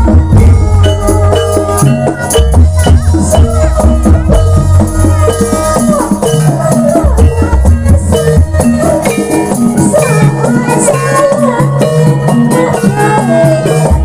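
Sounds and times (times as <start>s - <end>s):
heavy bass: 0.0s - 9.1s
drums: 0.0s - 14.0s
wavering melody line: 0.0s - 14.0s.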